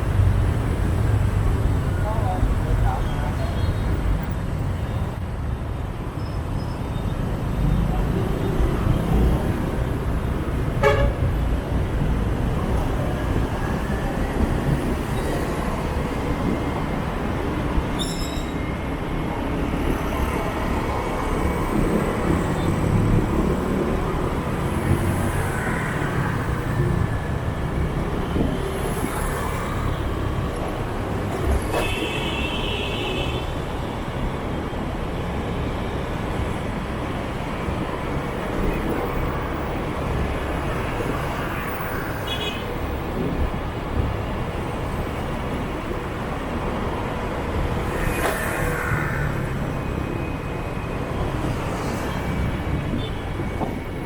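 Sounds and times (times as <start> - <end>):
traffic rumble: 0.0 - 54.0
vehicle horn: 10.8 - 11.3.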